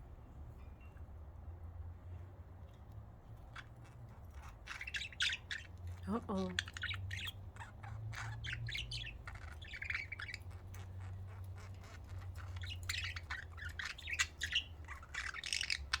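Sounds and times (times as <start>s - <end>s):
budgerigars chattering: 4.4s - 16.0s.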